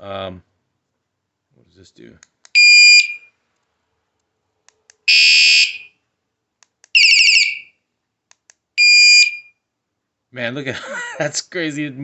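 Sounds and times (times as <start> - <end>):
bike alarm electronic siren: 5.1 - 5.9, 7.0 - 7.7, 8.8 - 9.5.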